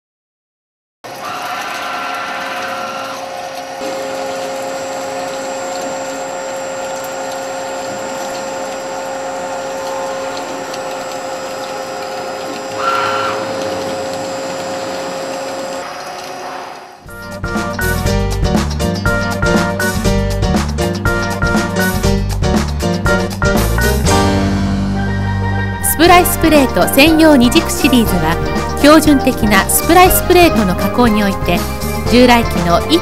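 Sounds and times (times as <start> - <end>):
drilling machine whine: 1.1 - 17.0.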